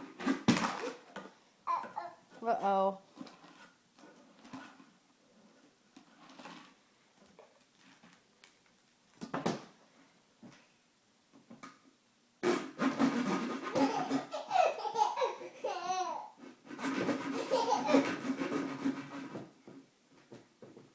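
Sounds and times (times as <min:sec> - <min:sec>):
plastic straw rubbing and squeaking: 0:12.4 - 0:14.4, 0:16.8 - 0:19.4.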